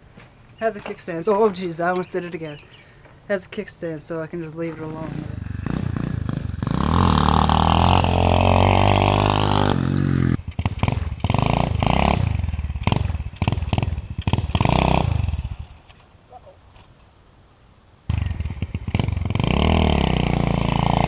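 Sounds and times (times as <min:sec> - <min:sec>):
small motorbike engine revving: 0:05.1 - 0:15.6, 0:18.1 - 0:21.0.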